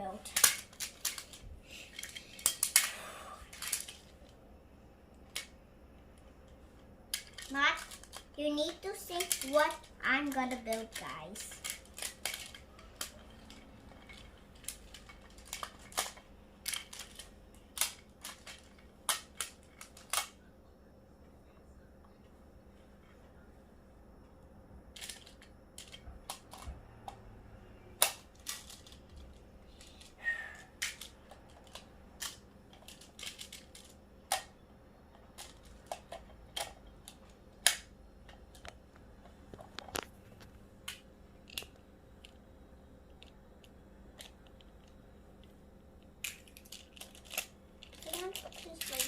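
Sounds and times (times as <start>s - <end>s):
plastic tiles clicking and snapping: 0.3s - 4.1s, 7.1s - 20.4s, 25.0s - 27.2s, 28.0s - 30.1s, 30.8s - 34.5s, 35.4s - 38.8s, 46.2s - 49.0s.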